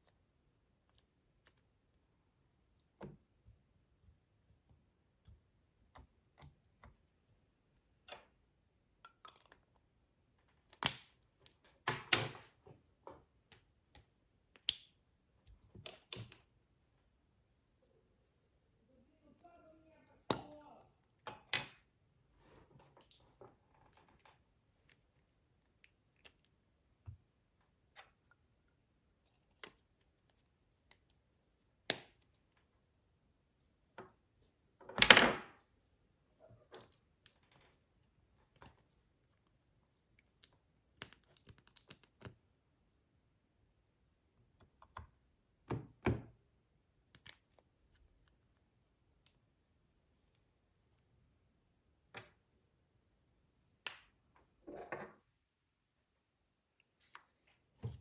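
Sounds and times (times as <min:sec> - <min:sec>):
hands handling small objects: 0:36.6 - 0:42.5, 0:46.9 - 0:51.1.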